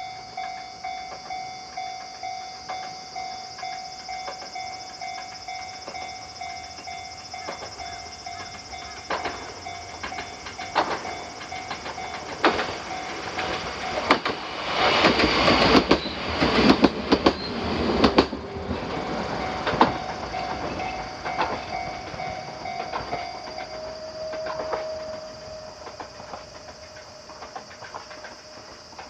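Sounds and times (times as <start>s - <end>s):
level crossing warning bell: 0.0s - 14.3s, 18.5s - 28.8s
train wheels clacking over rail joints: 0.3s - 29.0s.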